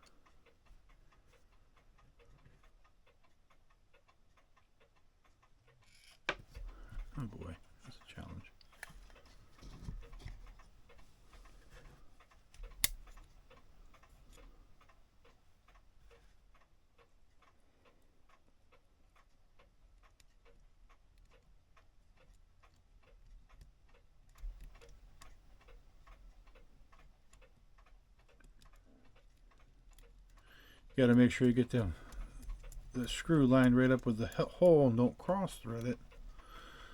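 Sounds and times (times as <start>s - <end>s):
mechanical clock ticking: 0.0s - 36.9s
sharp click: 12.6s - 13.3s.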